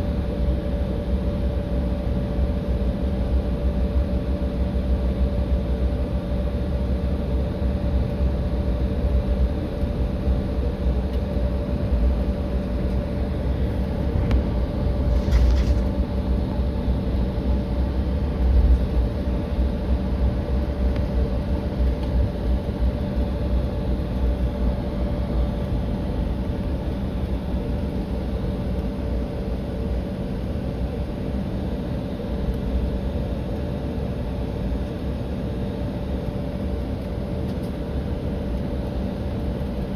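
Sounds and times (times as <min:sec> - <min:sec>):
jet engines low rumble: 0:00.0 - 0:39.9
cabin fan hum: 0:09.4 - 0:29.0.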